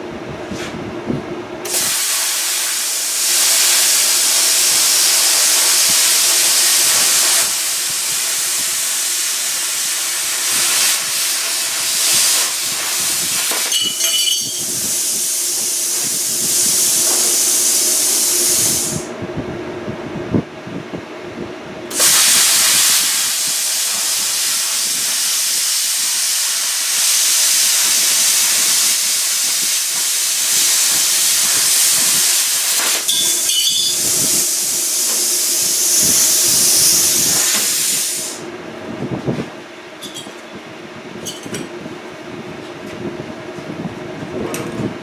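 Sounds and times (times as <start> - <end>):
plasma cutter hissing: 1.6 - 19.1, 21.9 - 38.5.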